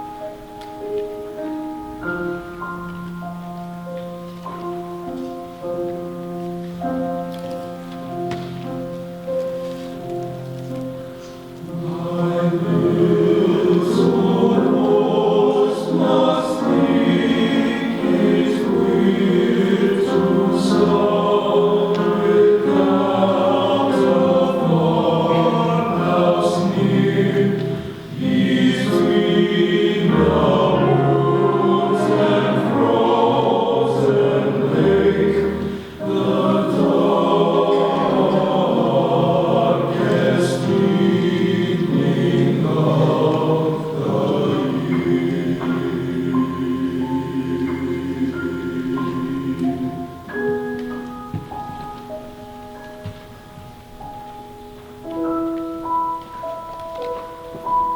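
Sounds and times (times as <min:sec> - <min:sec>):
men's chorus singing: 0:11.7 - 0:50.3.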